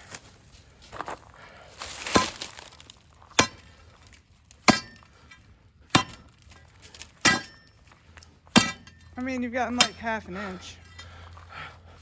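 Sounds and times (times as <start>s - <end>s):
steel tool striking rock: 2.1s - 2.5s, 3.3s - 3.8s, 4.6s - 5.2s, 5.9s - 7.8s, 8.5s - 9.1s, 9.7s - 10.2s.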